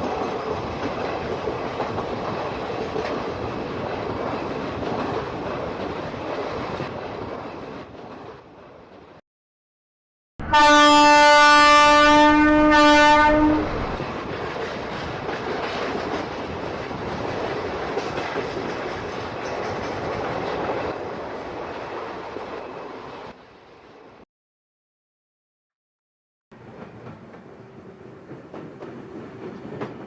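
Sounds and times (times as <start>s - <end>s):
train rumbling clatter: 0.0s - 9.2s, 12.8s - 23.4s, 26.6s - 30.0s
locomotive horn blast: 10.4s - 14.0s.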